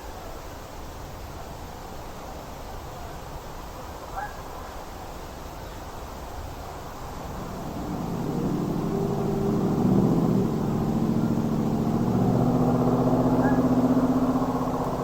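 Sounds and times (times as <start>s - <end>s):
vehicle engine running: 6.9s - 15.0s.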